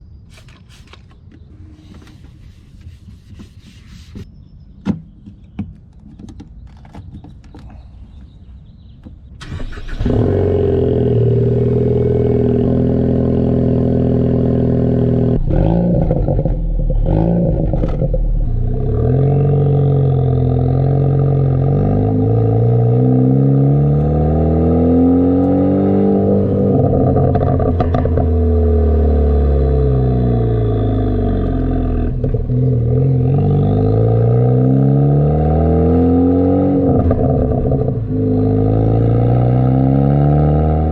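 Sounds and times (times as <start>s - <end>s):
car engine idling and revving: 8.6s - 40.9s
exhaust cracks: 9.4s - 35.7s, 36.3s - 39.6s.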